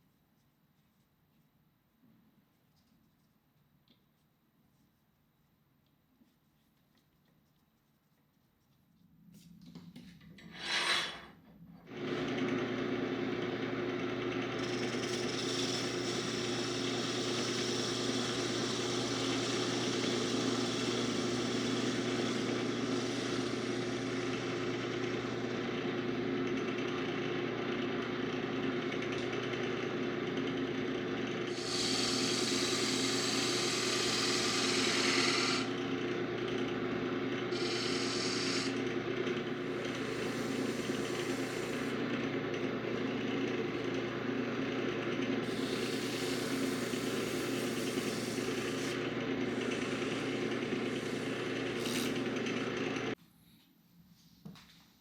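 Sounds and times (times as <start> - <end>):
electric power tool on wood: 11.9 - 53.2.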